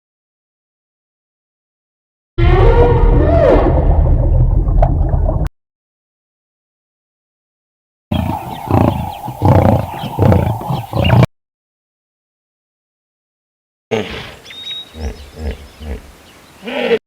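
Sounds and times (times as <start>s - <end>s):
large animal roaring: 2.4s - 4.3s, 8.1s - 11.3s
animal call: 8.1s - 11.3s, 13.9s - 17.0s.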